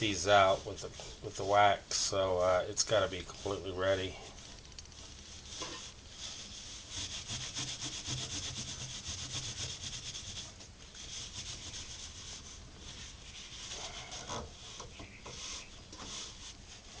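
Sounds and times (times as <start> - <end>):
hand rubbing wood scratchy hiss: 0.0 - 17.0.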